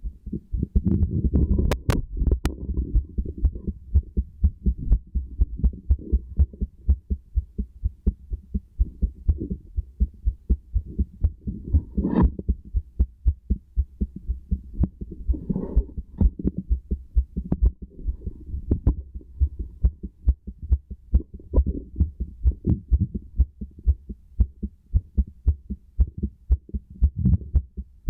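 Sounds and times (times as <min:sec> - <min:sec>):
heartbeat through stethoscope: 0:00.0 - 0:28.0.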